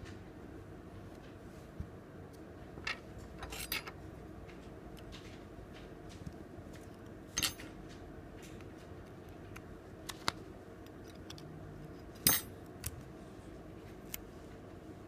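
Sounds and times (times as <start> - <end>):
low room hum: 0.0 - 15.0
metal tools clicking and clinking: 2.8 - 4.0, 7.4 - 7.8, 12.2 - 12.5.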